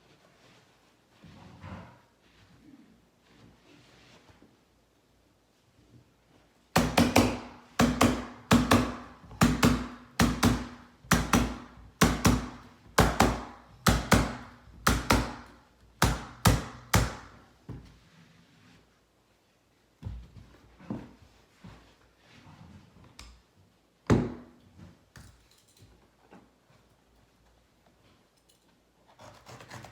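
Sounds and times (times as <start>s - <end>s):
sharp knocks fastening carpet: 6.8s - 17.8s.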